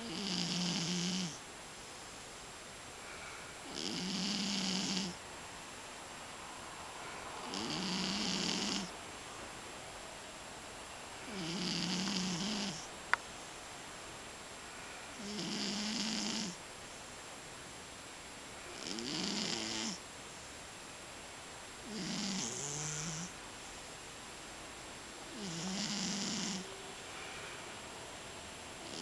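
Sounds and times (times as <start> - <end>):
cat snoring: 0.0 - 1.4, 3.1 - 5.2, 7.4 - 9.0, 11.3 - 12.9, 15.1 - 16.6, 18.6 - 20.0, 21.8 - 23.4, 25.3 - 26.8, 28.8 - 29.0.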